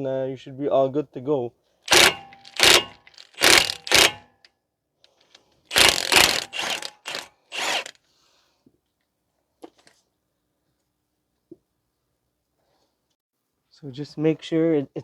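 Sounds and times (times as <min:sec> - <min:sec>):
impact wrench bursts: 0:01.9 - 0:04.3, 0:05.7 - 0:08.0.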